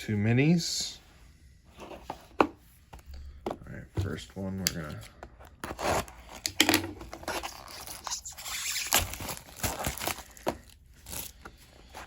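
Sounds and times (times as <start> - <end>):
card packs crinkling: 4.2 - 12.0
cardboard box tearing: 5.6 - 6.3, 7.2 - 11.3.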